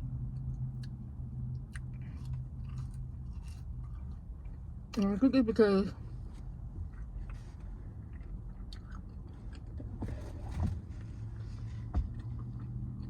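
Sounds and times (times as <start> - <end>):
person chewing food: 0.4 - 4.8, 6.8 - 10.0, 12.1 - 13.0.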